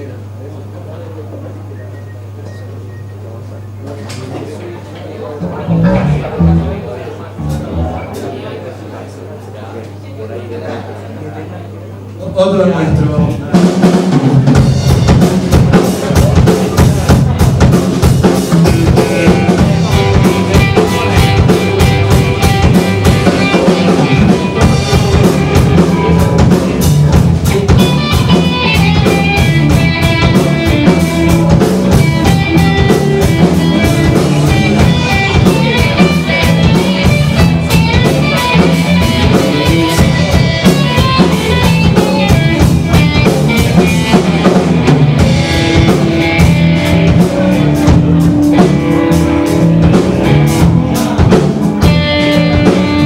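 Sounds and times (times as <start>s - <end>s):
drum kit beat: 5.4s - 8.4s, 13.5s - 53.0s
electric guitar: 5.4s - 8.6s, 13.9s - 53.0s
bass guitar: 5.4s - 8.8s, 13.7s - 53.0s.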